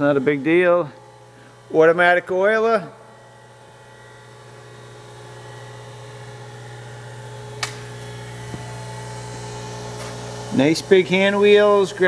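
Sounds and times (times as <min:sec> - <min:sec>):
surface grinder spindle humming: 0:03.0 - 0:12.0.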